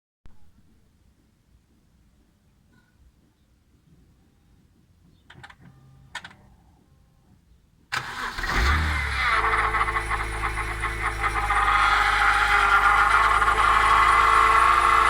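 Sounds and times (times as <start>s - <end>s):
car engine starting and idling: 7.9s - 15.0s.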